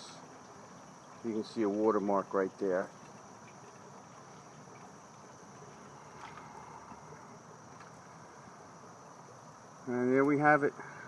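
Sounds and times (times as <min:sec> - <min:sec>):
crickets trilling: 0:00.0 - 0:11.0
faint ticks: 0:02.9 - 0:08.1.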